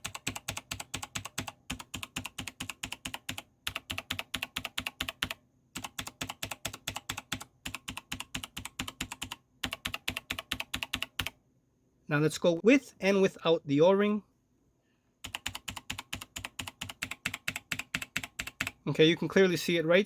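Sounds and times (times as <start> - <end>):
mechanical keyboard keys clacking: 0.0 - 11.3, 15.2 - 18.8.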